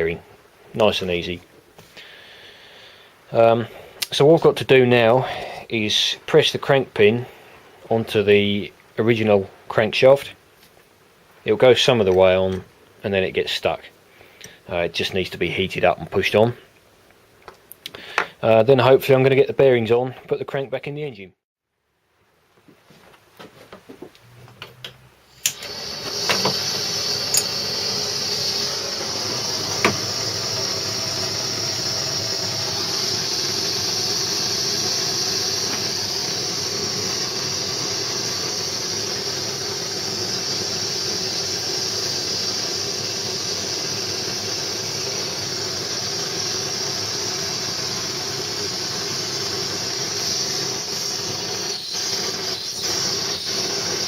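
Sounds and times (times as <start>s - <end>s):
heating tool hissing: 25.3s - 54.0s.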